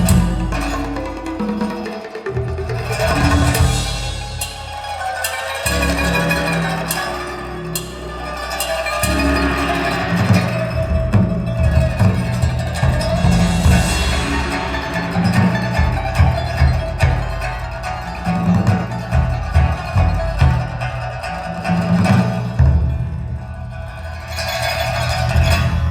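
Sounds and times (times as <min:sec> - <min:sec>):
light percussion: 0:00.0 - 0:25.9
plucked string instrument: 0:00.0 - 0:25.9
deep pulsing bass notes: 0:06.0 - 0:25.9.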